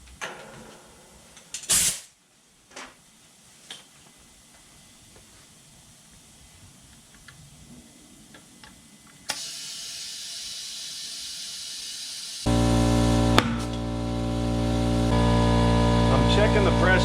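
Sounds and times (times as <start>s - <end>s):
compressed air hissing into tire: 1.7s - 2.1s, 9.2s - 16.9s
loud steady hum: 12.5s - 17.0s.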